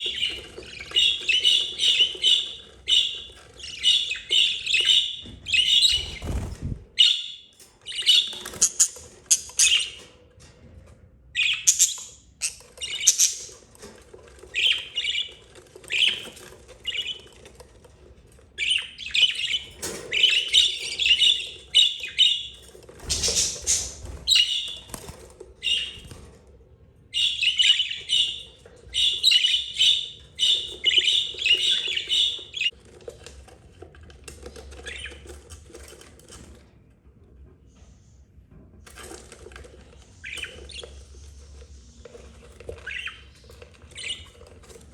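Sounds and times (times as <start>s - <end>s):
budgerigars chirping and squawking: 0.0s - 10.1s, 11.4s - 13.7s, 14.5s - 17.4s, 18.6s - 26.2s, 27.1s - 32.8s, 34.7s - 35.4s, 40.2s - 44.8s.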